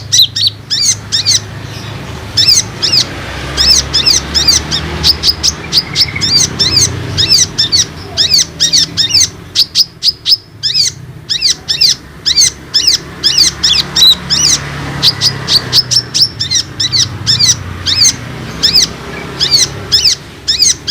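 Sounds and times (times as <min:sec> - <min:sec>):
sunbird singing high chirps: 0:00.0 - 0:20.9.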